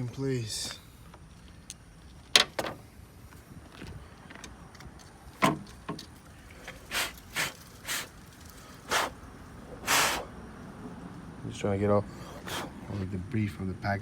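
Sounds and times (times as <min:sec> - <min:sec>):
short puffs of air: 0:06.7 - 0:09.2, 0:09.8 - 0:10.3, 0:12.2 - 0:12.9.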